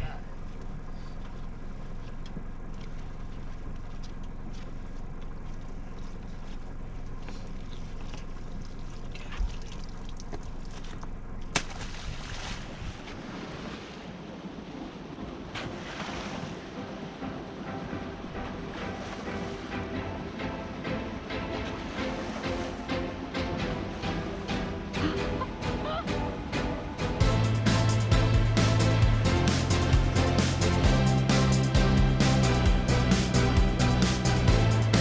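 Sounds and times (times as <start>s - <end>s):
wind: 0.0s - 27.2s
boat engine hum: 0.0s - 35.0s
rushing water: 11.8s - 35.0s.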